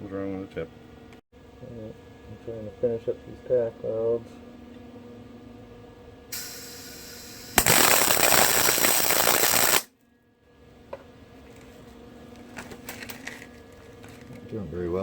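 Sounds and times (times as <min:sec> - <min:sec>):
welder arc crackling: 0:06.4 - 0:09.9.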